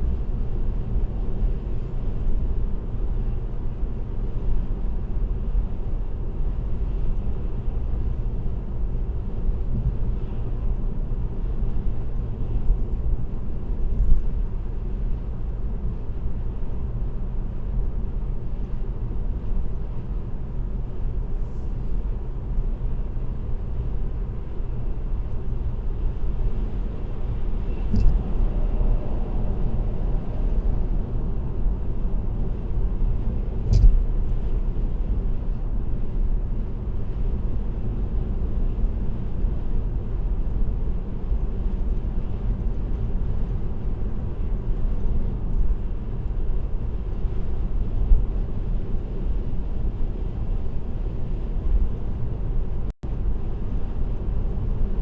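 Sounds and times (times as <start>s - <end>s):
car road rumble inside cabin: 0.0s - 55.0s
brief thumps: 33.6s - 34.0s.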